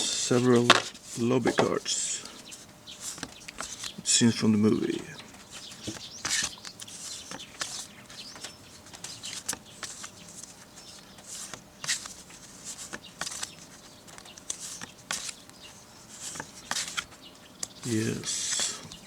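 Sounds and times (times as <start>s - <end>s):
cards rustling and sliding: 0.0s - 2.4s, 5.5s - 15.5s, 16.1s - 17.2s, 17.9s - 19.0s.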